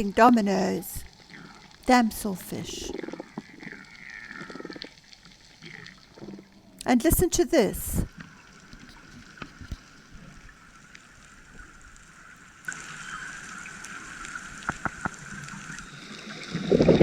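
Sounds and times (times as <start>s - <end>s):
underwater reef ambience: 0.0s - 17.0s
fish clicking: 2.8s - 6.4s.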